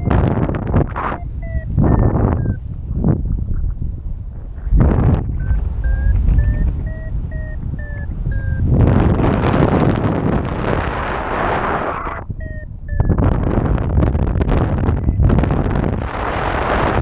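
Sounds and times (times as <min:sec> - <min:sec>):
variometer short beeps: 0:00.0 - 0:04.0, 0:05.4 - 0:09.2, 0:11.2 - 0:13.8, 0:14.7 - 0:15.7
wind noise on microphone: 0:00.0 - 0:17.0.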